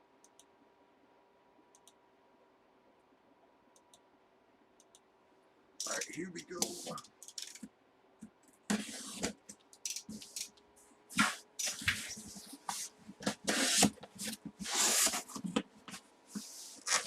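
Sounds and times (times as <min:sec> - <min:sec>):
packaging rustling and scraping: 0:11.2 - 0:17.0.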